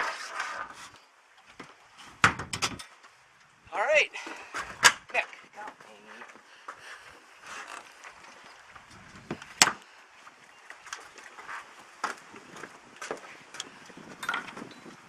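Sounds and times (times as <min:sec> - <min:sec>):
sharp knocks and clunks: 0:01.6 - 0:02.9.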